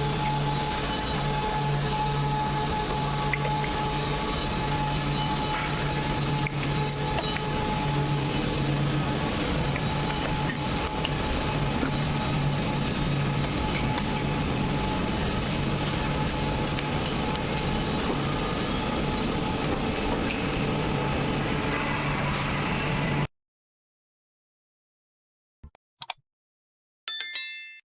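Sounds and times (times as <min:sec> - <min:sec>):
wood planer running: 0:00.0 - 0:20.2.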